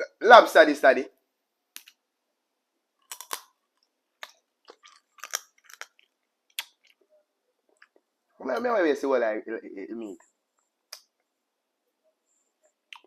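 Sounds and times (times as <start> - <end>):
chewing and crunching shellfish: 3.0 - 7.1, 7.7 - 8.2.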